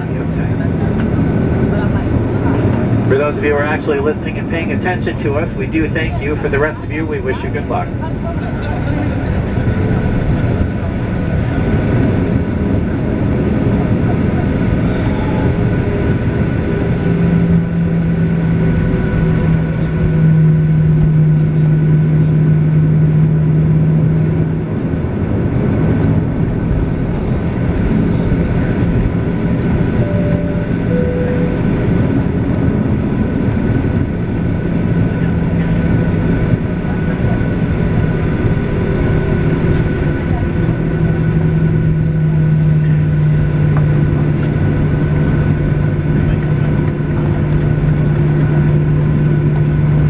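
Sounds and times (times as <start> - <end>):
airplane cabin rumble and hum: 0.0 - 50.0
two-note falling chime: 30.1 - 32.0.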